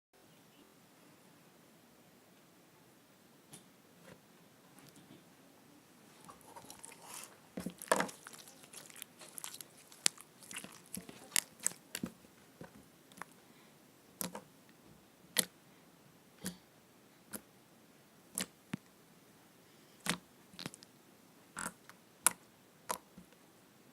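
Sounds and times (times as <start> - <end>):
slime squeezed with wet pops: 6.2 - 12.2, 18.3 - 18.6, 20.0 - 20.9.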